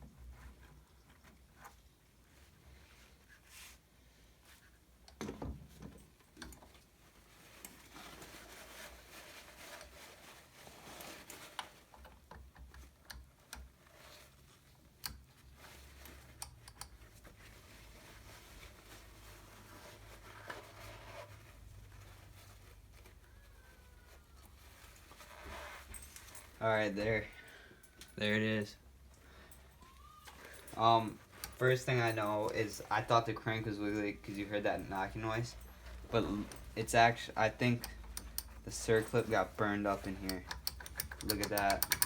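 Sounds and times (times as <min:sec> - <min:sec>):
tools clicking and tapping: 0:16.1 - 0:17.0, 0:37.4 - 0:42.0.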